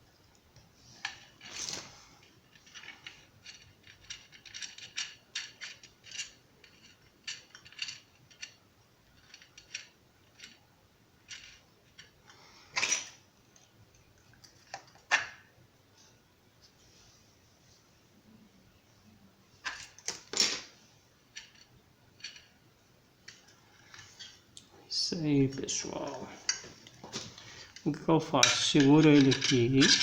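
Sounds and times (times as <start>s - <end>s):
small metal fittings clinking: 25.7s - 30.0s
metal clatter: 27.7s - 30.0s.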